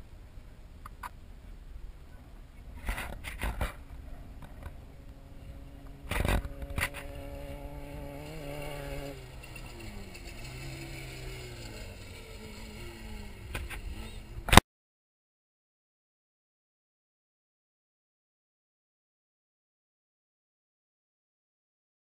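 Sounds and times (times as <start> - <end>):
race vehicle engine running: 2.8 - 14.6.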